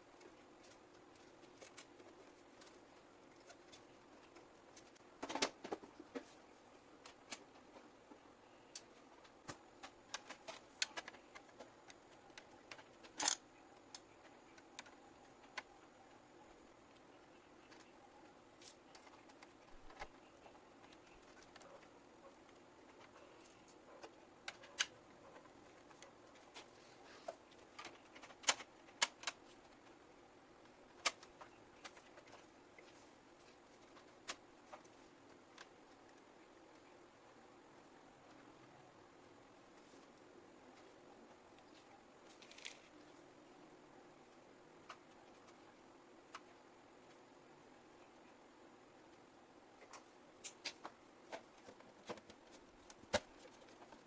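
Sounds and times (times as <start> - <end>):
light clicks and taps on computer parts: 7.0 - 16.1, 18.6 - 30.0.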